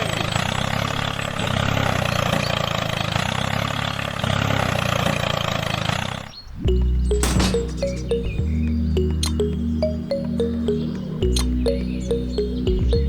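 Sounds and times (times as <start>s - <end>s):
engine idling: 0.0s - 8.6s.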